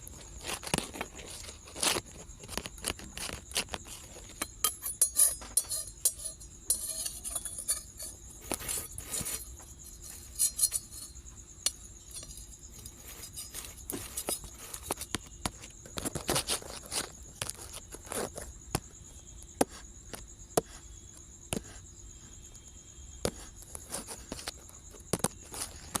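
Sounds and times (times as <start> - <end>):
cooking utensils clinking and scraping: 3.6 - 15.1.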